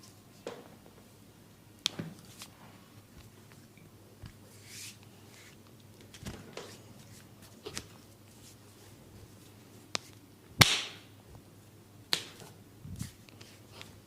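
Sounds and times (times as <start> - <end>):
hands slapping head: 9.9 - 11.0, 12.1 - 12.4.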